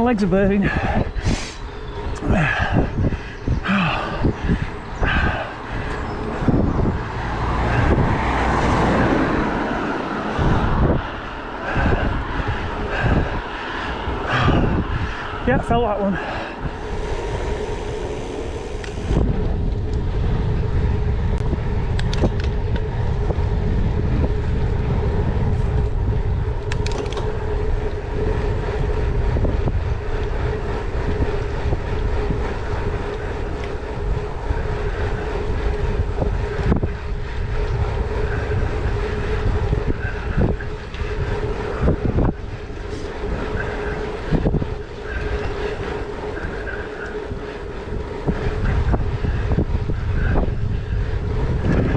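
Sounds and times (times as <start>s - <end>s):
wind rush: 0.0s - 51.9s
bike tyre rumble on gravel: 0.6s - 51.9s
steady hum: 14.2s - 51.9s.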